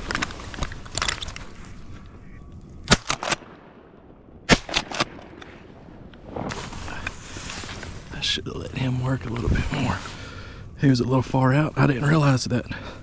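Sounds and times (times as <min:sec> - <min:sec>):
shotgun shots with echoes: 0:04.5 - 0:05.2.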